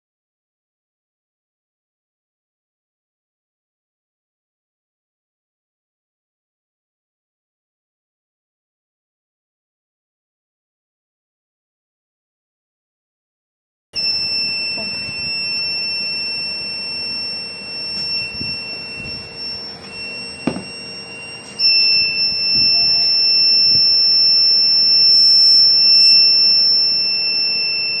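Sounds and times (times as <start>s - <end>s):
high-pitched buzzer tone: 14.0s - 28.0s.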